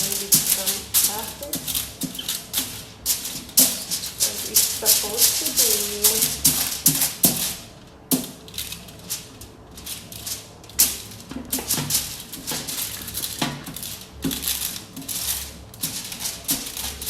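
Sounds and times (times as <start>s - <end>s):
aluminium foil crinkling: 0.0s - 17.0s
kitchen handling clatters: 0.0s - 17.0s.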